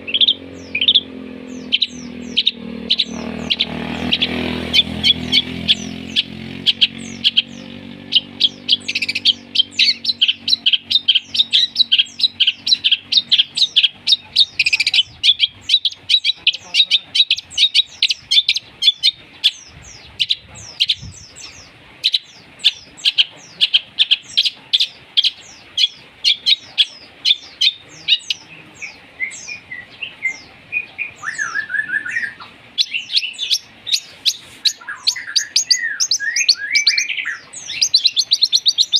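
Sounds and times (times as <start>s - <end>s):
lovebird calls: 0.0s - 38.9s
sparrows chirping: 0.0s - 38.9s.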